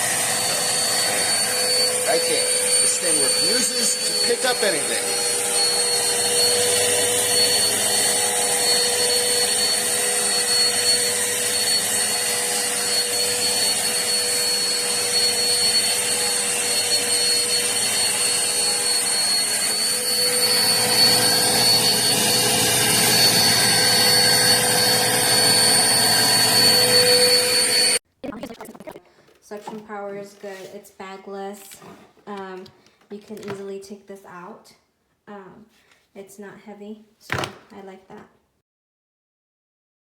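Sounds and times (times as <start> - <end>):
vacuum cleaner running: 0.0 - 28.0.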